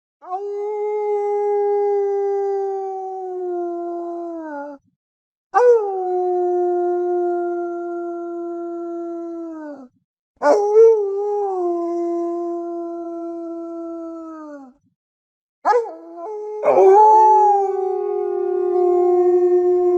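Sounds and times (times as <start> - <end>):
wolf howling: 15.7 - 19.9.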